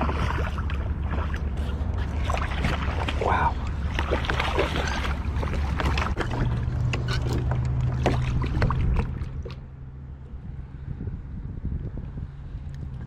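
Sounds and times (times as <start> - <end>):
low steady hum: 0.0 - 13.0
water noise: 0.0 - 13.0
knocks and clicks on a kayak: 3.6 - 9.6.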